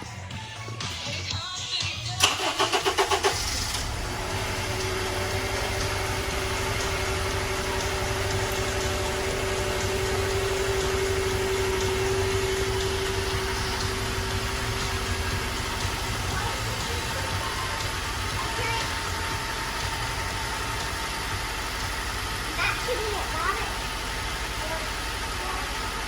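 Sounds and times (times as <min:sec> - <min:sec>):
car engine idling: 0:00.0 - 0:26.0
steady whine: 0:03.2 - 0:26.0.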